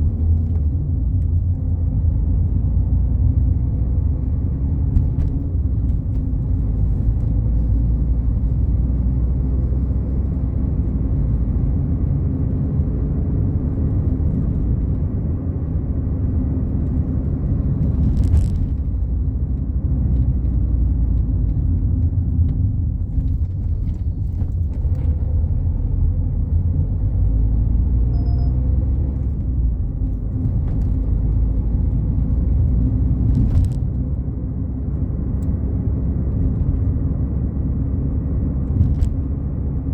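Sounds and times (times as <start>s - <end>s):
car engine and tyre rumble: 0.0s - 39.9s.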